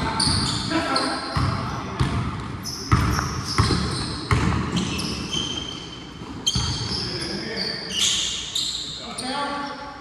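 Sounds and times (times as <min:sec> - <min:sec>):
sneakers squeaking: 0:00.0 - 0:09.9
basketball bouncing on wooden floor: 0:01.4 - 0:05.3, 0:06.2 - 0:07.1.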